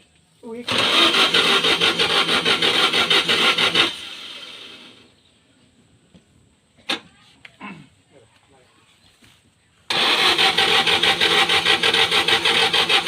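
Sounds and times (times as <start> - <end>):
car engine cranking: 0.6 - 5.0, 9.9 - 13.0.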